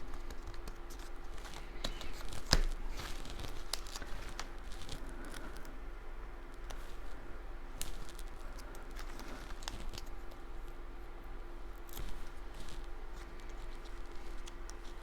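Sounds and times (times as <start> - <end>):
paper rustling: 0.0 - 5.7, 11.8 - 15.0
steady low hum: 0.0 - 15.0.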